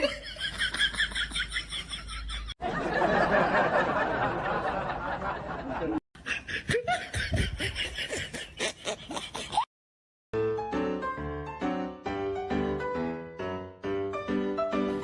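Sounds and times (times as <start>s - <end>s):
people laughing and snickering: 0.0s - 9.7s.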